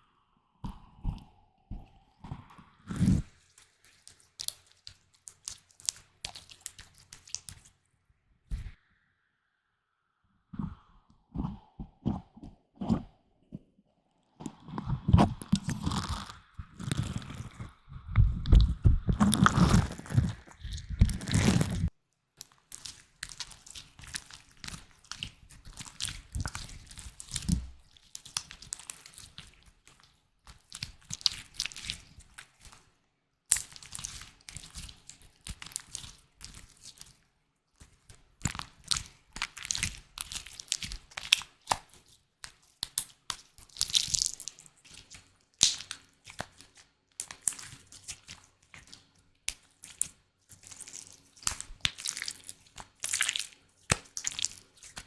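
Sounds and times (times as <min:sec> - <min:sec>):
object crackling and crunching: 0:01.0 - 0:07.7, 0:14.4 - 0:32.8, 0:37.8 - 0:55.0.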